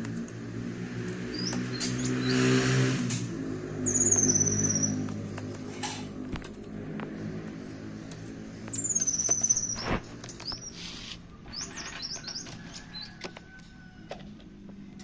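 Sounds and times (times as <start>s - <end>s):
thrush singing whistles: 3.8s - 5.0s, 8.7s - 10.8s.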